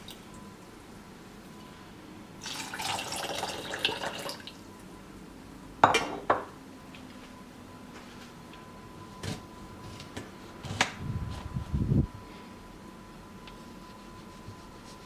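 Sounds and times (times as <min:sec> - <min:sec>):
dishware clinks: 0:05.8 - 0:06.5.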